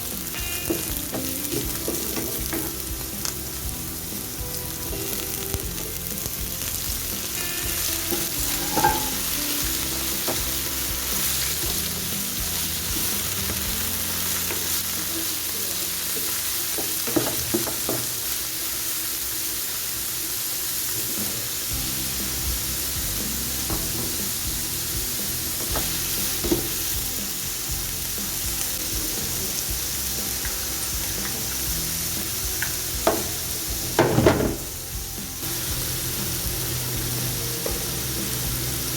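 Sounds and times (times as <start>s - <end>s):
food sizzling in hot oil: 0.0s - 38.9s
utensil scraping a pan: 8.1s - 9.3s.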